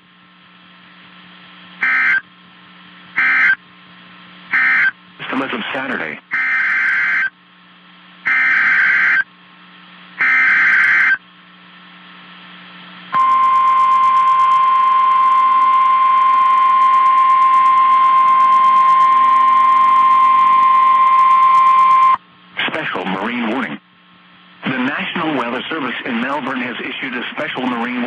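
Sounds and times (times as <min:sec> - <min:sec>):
steady warning alarm tone: 0:01.8 - 0:02.3, 0:03.2 - 0:03.6, 0:04.5 - 0:05.0, 0:06.3 - 0:07.3, 0:08.2 - 0:09.3, 0:10.2 - 0:11.2, 0:13.1 - 0:22.2
screeching data bursts: 0:08.3 - 0:09.2, 0:10.2 - 0:11.2.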